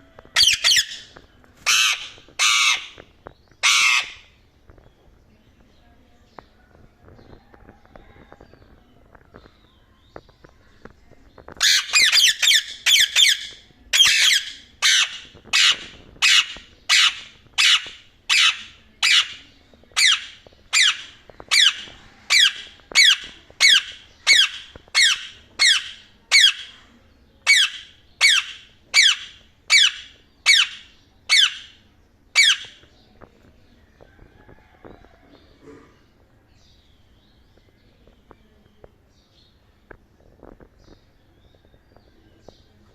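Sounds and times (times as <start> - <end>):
parakeet squawking: 0.4 - 3.0, 3.6 - 4.3, 11.6 - 19.4, 20.0 - 26.7, 27.5 - 31.8, 32.4 - 32.8.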